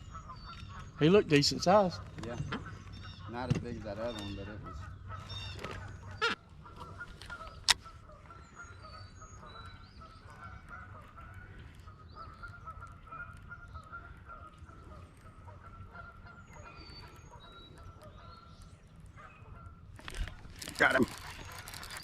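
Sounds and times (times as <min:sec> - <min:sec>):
distant flock of birds calling: 0:00.0 - 0:22.0.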